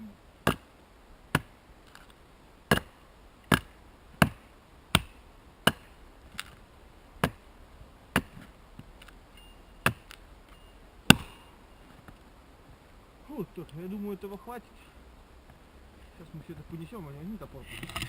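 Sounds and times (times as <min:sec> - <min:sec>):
axe chopping wood: 0:00.4 - 0:00.7, 0:01.3 - 0:01.6, 0:02.7 - 0:06.6, 0:07.2 - 0:07.5, 0:08.1 - 0:09.0, 0:09.8 - 0:10.2, 0:11.1 - 0:11.6.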